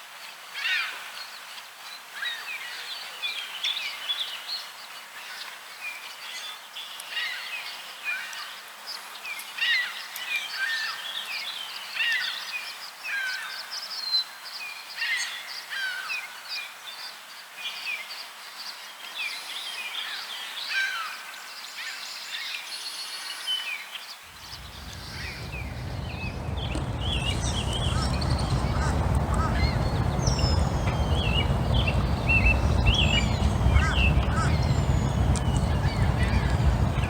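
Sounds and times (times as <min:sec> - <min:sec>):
low rumble: 0:24.4 - 0:37.0
small birds chirping: 0:24.4 - 0:37.0.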